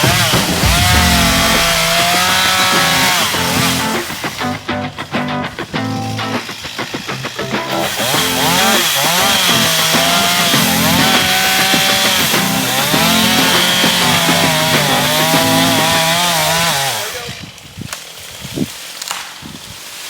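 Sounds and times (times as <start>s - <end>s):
sharp knocks: 0.0s - 4.3s
chainsaw cutting wood: 0.0s - 4.5s, 5.8s - 20.0s.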